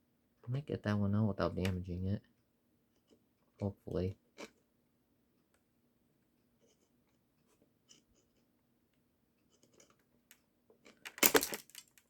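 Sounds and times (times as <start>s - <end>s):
metal ring snapping and rattling: 11.0s - 12.0s.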